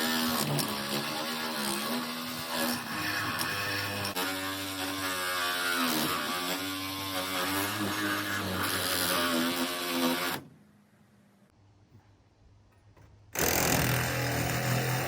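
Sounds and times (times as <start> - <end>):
reciprocating saw cutting metal: 13.4 - 15.0.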